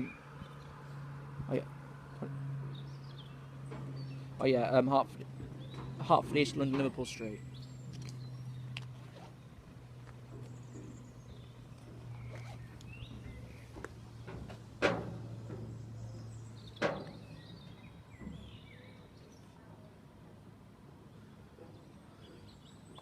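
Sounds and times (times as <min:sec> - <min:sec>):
steady low hum: 0:00.0 - 0:23.0
sharp knocks: 0:13.1 - 0:15.8, 0:16.8 - 0:17.2.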